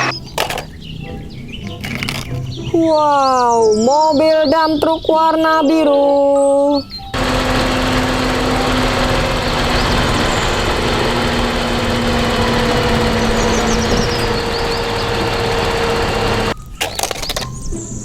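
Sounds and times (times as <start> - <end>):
vehicle engine humming: 0.0 - 0.4, 7.1 - 16.6.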